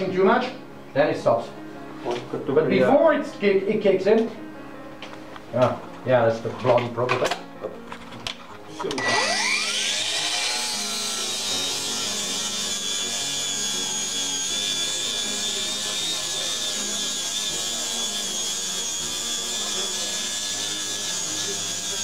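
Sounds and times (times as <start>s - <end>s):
angle grinder grinding: 8.8s - 22.0s.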